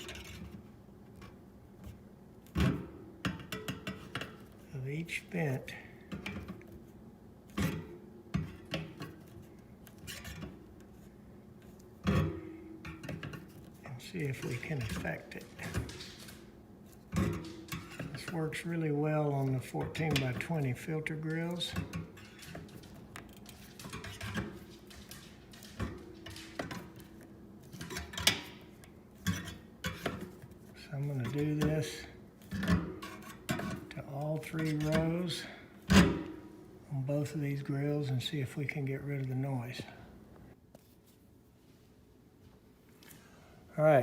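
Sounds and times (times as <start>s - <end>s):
steady low hum: 0.0s - 44.0s
pliers scraping metal louvers: 31.0s - 36.1s.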